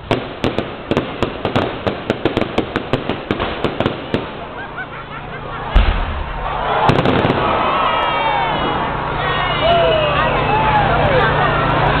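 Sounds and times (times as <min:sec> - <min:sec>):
fireworks crackling bangs: 0:00.0 - 0:09.1
deep firework boom: 0:05.7 - 0:08.0.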